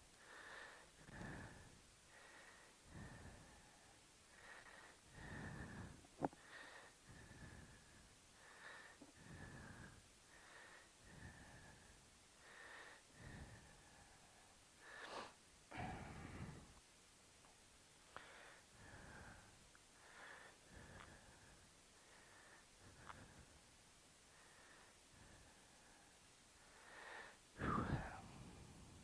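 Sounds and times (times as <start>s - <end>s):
person breathing softly: 0.0s - 16.8s, 17.9s - 29.0s.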